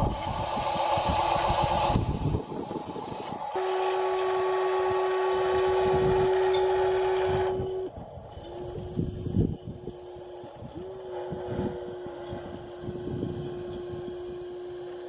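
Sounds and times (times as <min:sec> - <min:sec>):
electric motor whining: 0:00.0 - 0:15.0.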